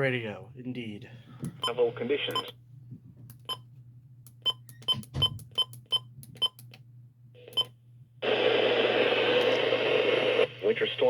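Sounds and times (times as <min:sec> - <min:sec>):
radio speaker hiss: 0:08.2 - 0:11.0.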